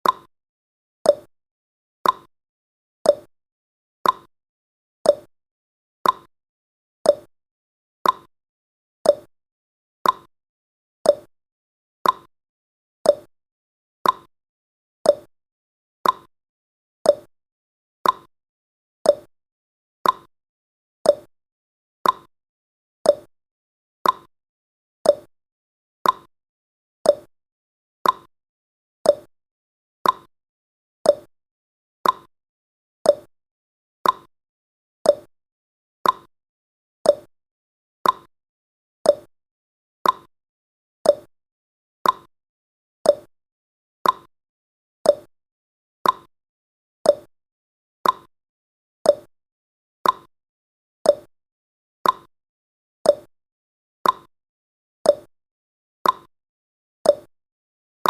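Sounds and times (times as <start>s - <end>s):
clock ticking: 32.0s - 32.3s, 38.0s - 38.3s, 42.0s - 42.3s, 44.0s - 44.3s, 46.0s - 46.3s, 48.0s - 48.3s.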